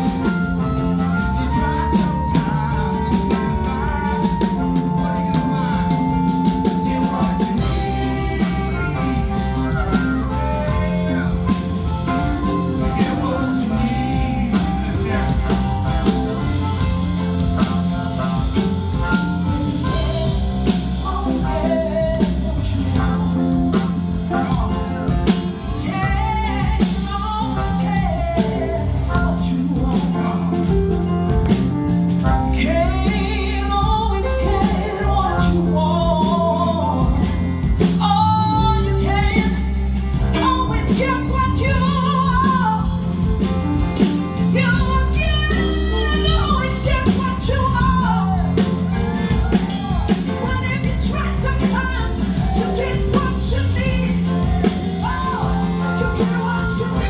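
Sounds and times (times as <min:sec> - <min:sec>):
live rock band playing: 0:00.0 - 0:57.0
person singing: 0:00.0 - 0:57.0
steady drum beat: 0:00.0 - 0:57.0.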